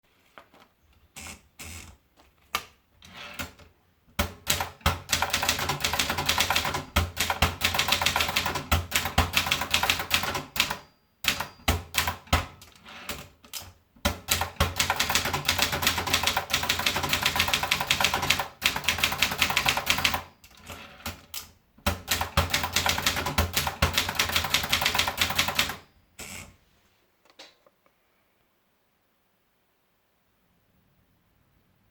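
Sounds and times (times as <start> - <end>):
manual typewriter typing: 4.2 - 25.9.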